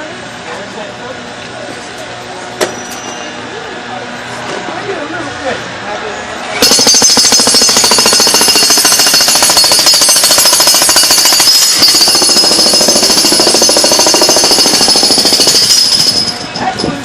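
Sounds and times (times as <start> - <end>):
jackhammer hammering: 6.6 - 16.9.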